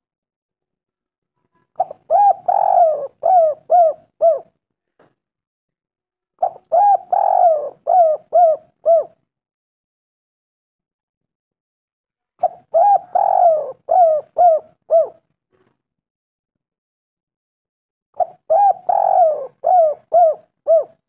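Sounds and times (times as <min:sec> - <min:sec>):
dove cooing: 0:01.8 - 0:04.5, 0:06.4 - 0:09.2, 0:12.4 - 0:15.2, 0:18.2 - 0:21.0.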